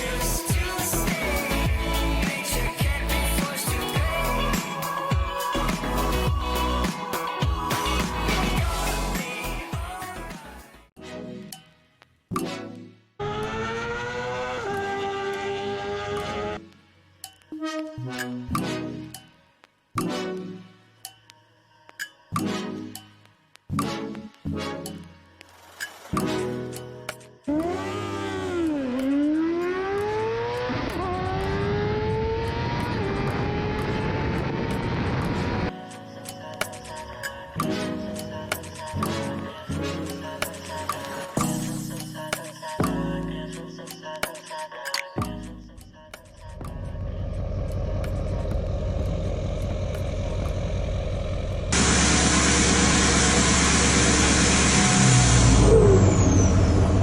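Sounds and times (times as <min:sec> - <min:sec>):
vehicle engine revving: 0:27.5 - 0:35.6, 0:46.9 - 0:57.0.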